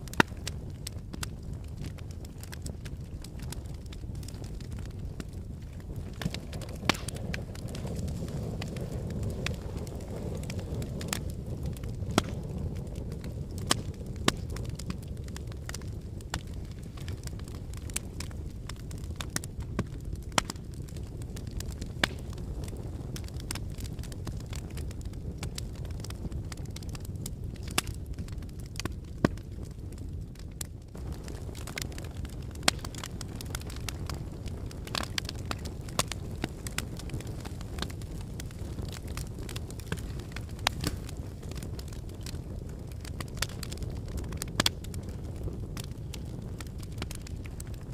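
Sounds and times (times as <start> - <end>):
fireplace fire crackling: 0.0 - 47.9
sharp pops and snaps: 6.1 - 7.9, 21.9 - 22.3, 39.8 - 41.1.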